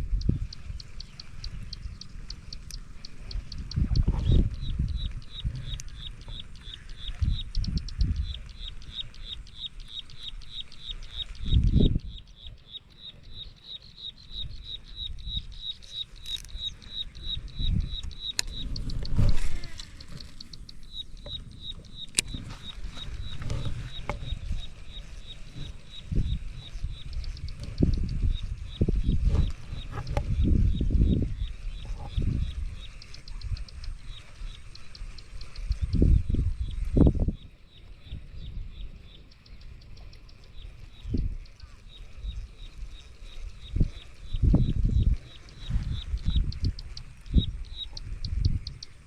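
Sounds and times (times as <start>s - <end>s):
animal chirping: 0.0s - 49.0s
low thumps and rumbles: 3.3s - 8.6s.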